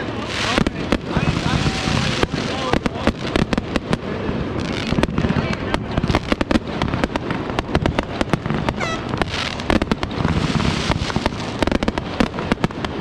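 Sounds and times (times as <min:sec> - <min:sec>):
crackling hiss: 0:00.0 - 0:13.0
fireworks popping and banging: 0:00.0 - 0:13.0
firework whistle: 0:08.6 - 0:11.2.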